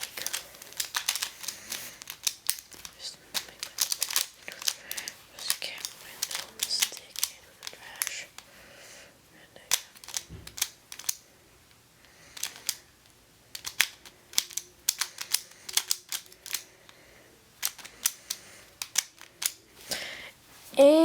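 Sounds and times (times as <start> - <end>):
plastic puzzle clicks and snaps: 0.0 - 8.5, 9.6 - 11.2, 12.0 - 12.9, 13.5 - 17.0, 17.6 - 19.6.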